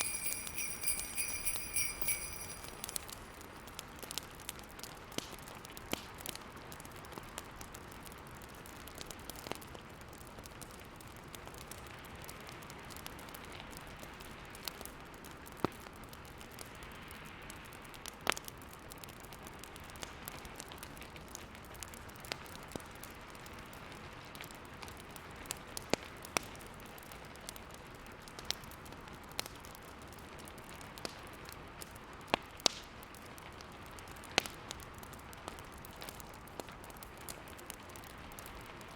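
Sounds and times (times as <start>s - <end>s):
wood fire crackling and popping: 31.0s - 38.1s.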